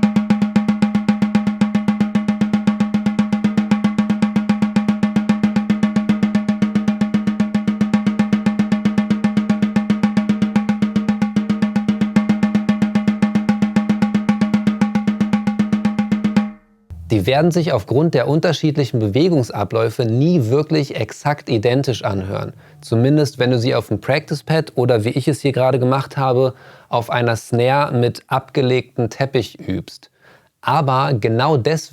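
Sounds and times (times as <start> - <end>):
snare drum rolls with sticks: 0.0 - 17.7.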